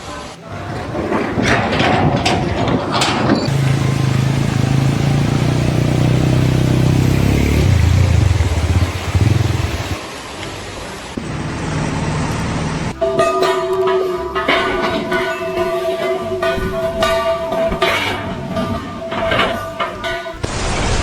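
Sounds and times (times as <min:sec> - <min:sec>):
engine running: 0:03.4 - 0:13.0.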